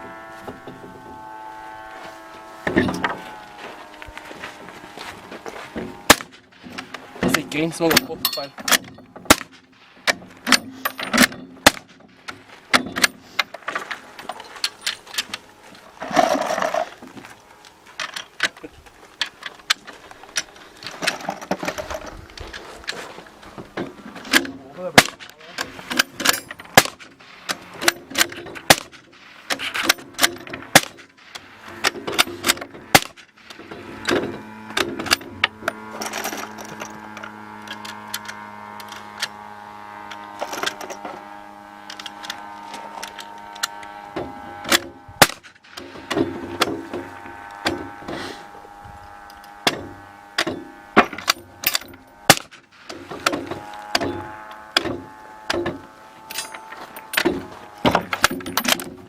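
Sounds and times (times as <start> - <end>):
steady droning tone: 0.0 - 59.0
suppressed gunshots: 8.7 - 13.1, 26.7 - 31.4, 32.1 - 33.2.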